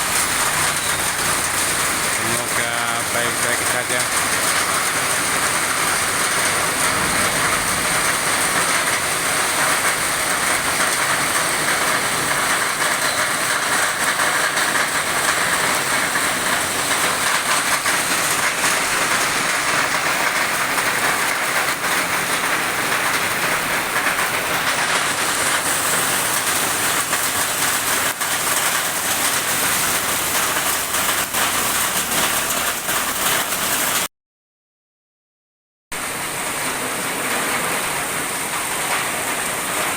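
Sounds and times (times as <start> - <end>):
heavy rain pouring: 0.0 - 34.1, 36.0 - 39.9.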